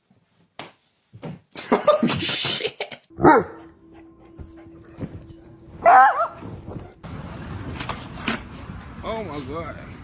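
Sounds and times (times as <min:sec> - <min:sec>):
dog yelping: 0:05.8 - 0:07.0.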